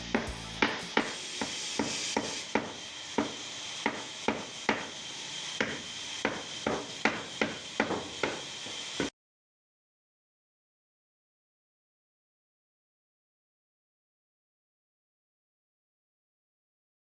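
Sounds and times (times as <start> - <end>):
hammer blows on wood: 0.0 - 4.9
steady hiss: 0.0 - 9.1.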